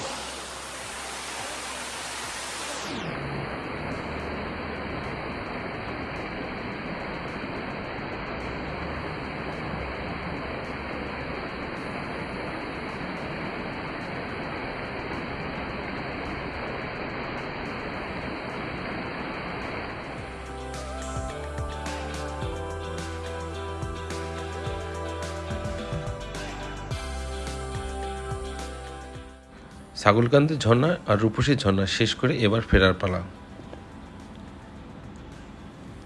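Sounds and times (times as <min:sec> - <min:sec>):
waterfall rushing: 0:00.0 - 0:05.6.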